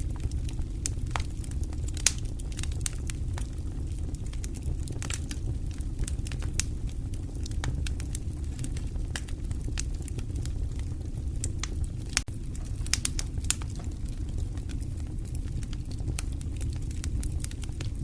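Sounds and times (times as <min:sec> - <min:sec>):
fire popping and crackling: 0:00.0 - 0:18.0
low rumble of flames: 0:00.0 - 0:18.0.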